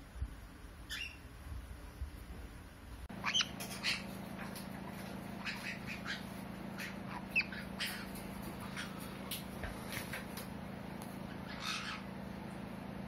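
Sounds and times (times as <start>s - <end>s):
steady low hum: 0.0s - 13.0s
parrot squawking and chirping: 0.9s - 1.2s, 3.2s - 4.2s, 5.3s - 9.1s, 11.3s - 12.1s.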